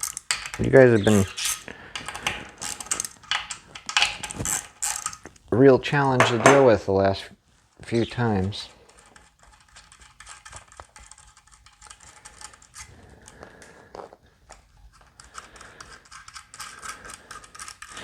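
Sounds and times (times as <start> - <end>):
small clicks and scratching: 0.0 - 5.5, 7.6 - 18.0.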